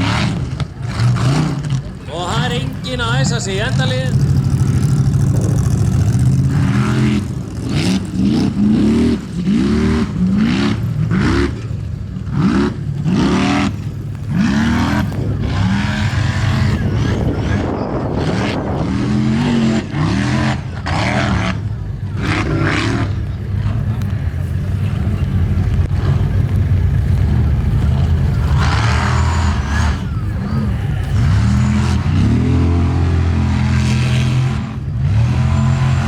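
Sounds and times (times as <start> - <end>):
race car engine revving: 0.0 - 36.0.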